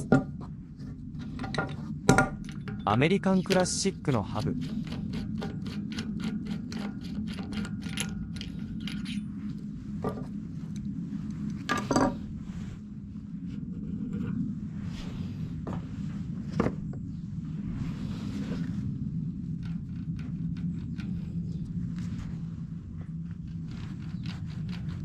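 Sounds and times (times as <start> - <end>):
steady low hum: 0.0 - 25.0
parts clinking: 1.2 - 4.2, 11.6 - 12.2.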